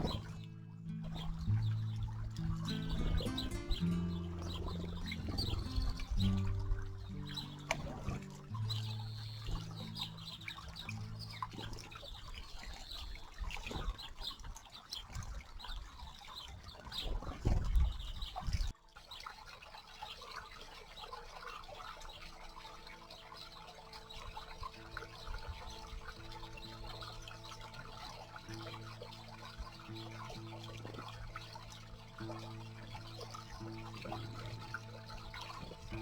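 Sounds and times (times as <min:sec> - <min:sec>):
birds chirping and squawking: 0:00.0 - 0:12.3
soft background music: 0:00.0 - 0:13.6, 0:20.5 - 0:36.0
water splashing and trickling: 0:00.0 - 0:36.0.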